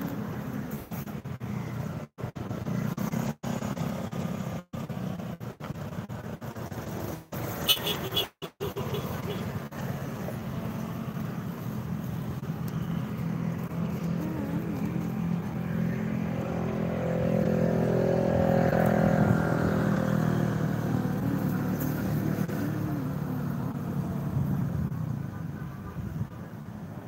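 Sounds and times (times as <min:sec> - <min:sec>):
heavy vehicle engine passing: 0:08.6 - 0:26.9.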